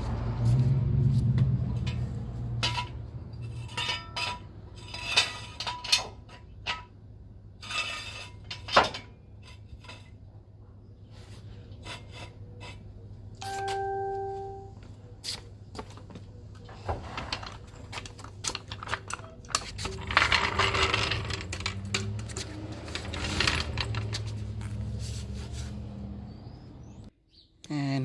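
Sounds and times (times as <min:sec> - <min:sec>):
short steady tone: 0:13.4 - 0:14.8
metal objects clinking: 0:17.3 - 0:24.6.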